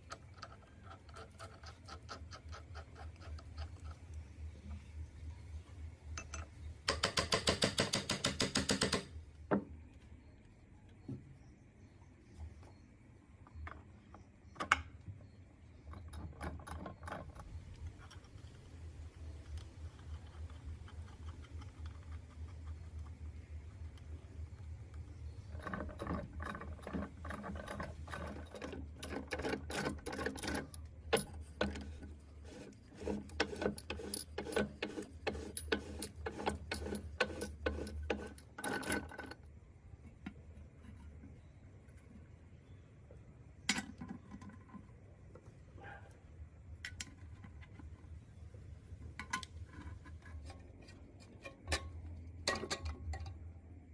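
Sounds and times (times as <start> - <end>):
metal parts clicking and rattling: 25.5 - 32.1.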